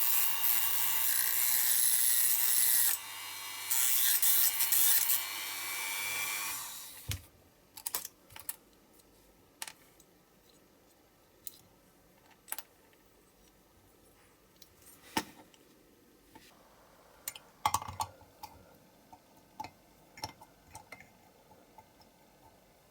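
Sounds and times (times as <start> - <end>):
small power tool running: 0.0 - 7.1.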